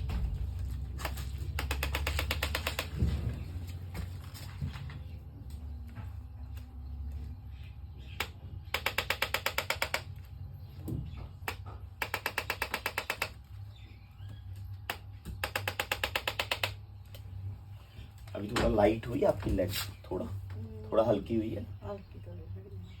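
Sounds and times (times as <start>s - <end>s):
device clicking like a ratchet: 1.0s - 3.0s, 8.2s - 10.1s, 11.5s - 13.4s, 14.9s - 16.8s.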